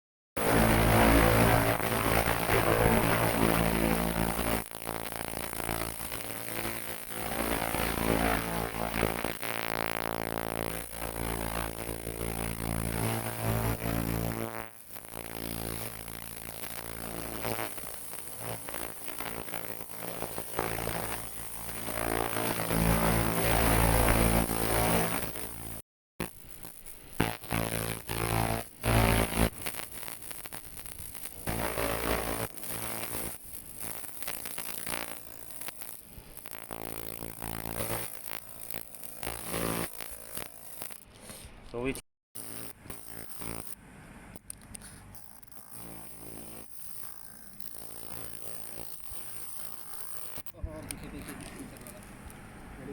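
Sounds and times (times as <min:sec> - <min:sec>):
laser cleaning machine buzzing: 0:00.4 - 0:41.0, 0:42.4 - 0:43.8, 0:45.1 - 0:52.8
crackling hiss: 0:00.4 - 0:52.9.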